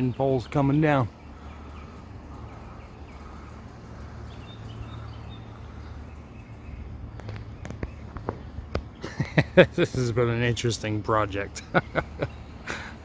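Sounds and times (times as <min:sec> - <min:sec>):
faint bird chirps: 0:00.0 - 0:08.2.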